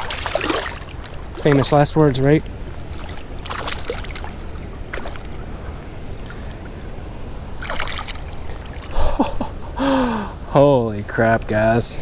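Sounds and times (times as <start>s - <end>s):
sharp water splashes: 0.0s - 5.4s, 7.6s - 9.0s
river water trickling: 0.0s - 9.5s
person gasping: 8.9s - 10.4s.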